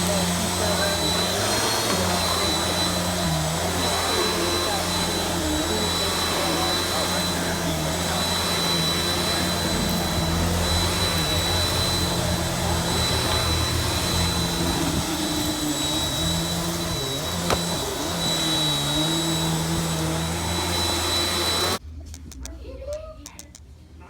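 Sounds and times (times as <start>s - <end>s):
vacuum cleaner running: 0.0s - 21.8s
click: 17.4s - 17.8s, 22.1s - 23.7s.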